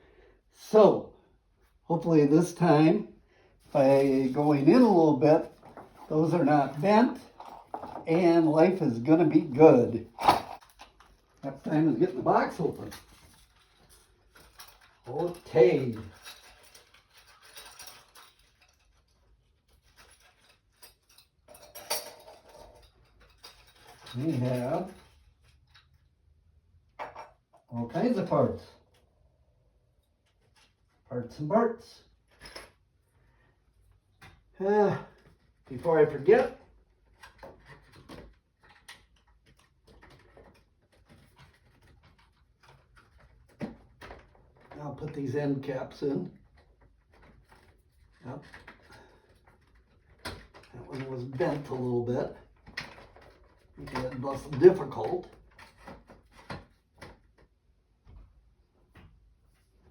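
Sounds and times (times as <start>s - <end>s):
faint plastic parts clicking: 32.1s - 45.2s.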